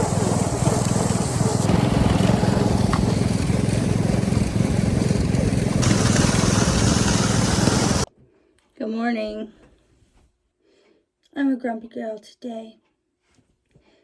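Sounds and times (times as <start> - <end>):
vehicle engine rumble: 0.0 - 8.1.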